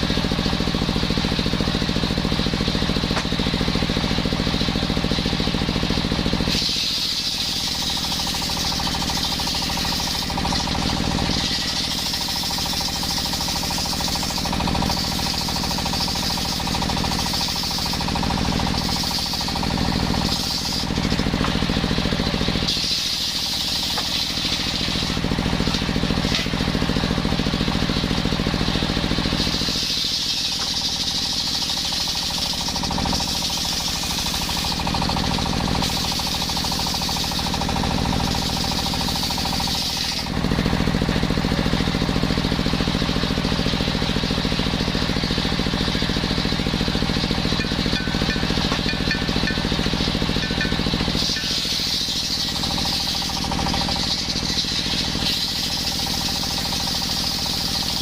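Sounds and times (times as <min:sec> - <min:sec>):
circular saw cutting wood: 0:00.0 - 0:58.0.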